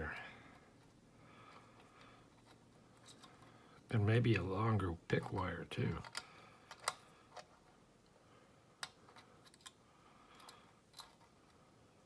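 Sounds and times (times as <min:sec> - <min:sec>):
faint metallic clicks in padlock: 0:06.0 - 0:07.1.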